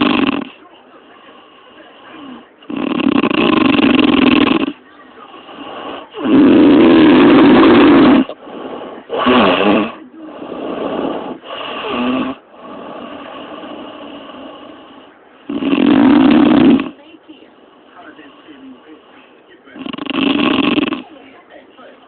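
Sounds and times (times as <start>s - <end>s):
woman snoring: 0.0s - 0.6s, 1.6s - 17.0s, 19.8s - 21.1s.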